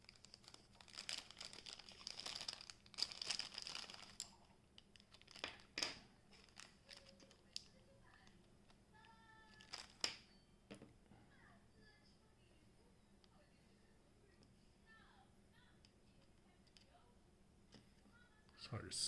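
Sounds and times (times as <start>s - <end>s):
crinkling and rustling of handling: 0.0s - 11.4s.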